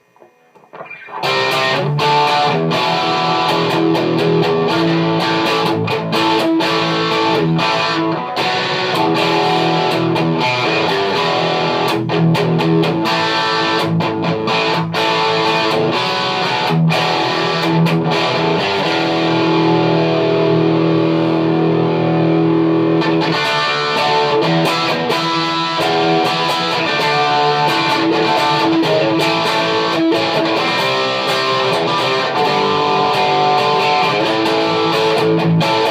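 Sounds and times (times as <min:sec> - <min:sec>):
electric guitar playing: 0:00.0 - 0:35.9.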